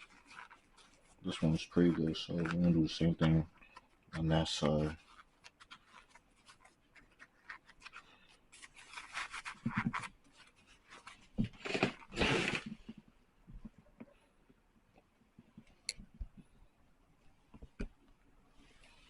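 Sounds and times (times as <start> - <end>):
small clicks and scuffs: 0.0 - 11.8
hands rubbing a sneaker: 0.0 - 12.1.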